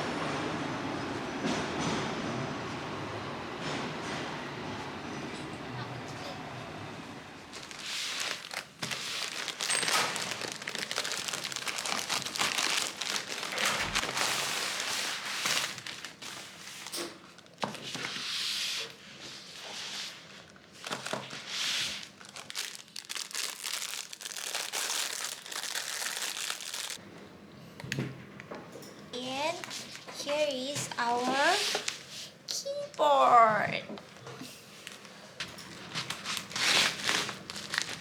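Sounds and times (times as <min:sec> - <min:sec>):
packaging crinkling and tearing: 0:07.6 - 0:18.1, 0:20.7 - 0:27.0, 0:34.0 - 0:38.0.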